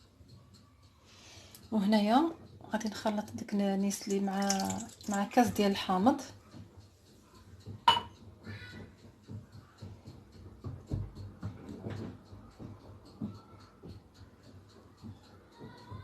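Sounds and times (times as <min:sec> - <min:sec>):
stirring in bowl: 0:01.6 - 0:06.4
utensil clinking against bowl: 0:02.7 - 0:06.2, 0:07.8 - 0:08.2.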